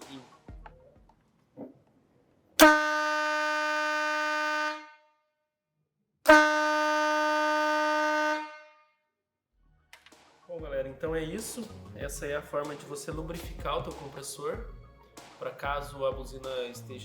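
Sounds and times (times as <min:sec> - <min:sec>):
air horn blasts: 0:02.6 - 0:05.1, 0:06.3 - 0:08.8.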